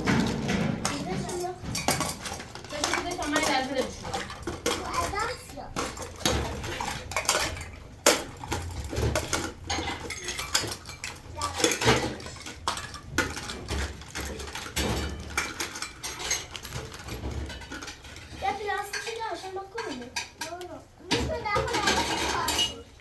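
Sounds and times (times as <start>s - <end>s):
dishes and cutlery clinking: 0.0s - 23.0s.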